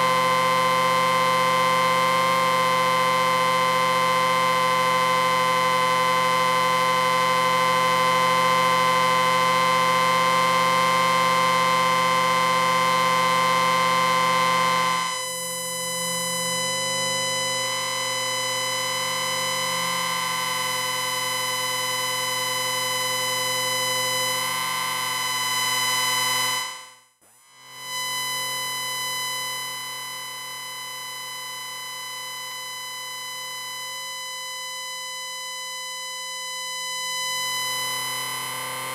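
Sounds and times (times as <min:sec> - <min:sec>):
electronic whine from amplifier: 0:00.0 - 0:38.9.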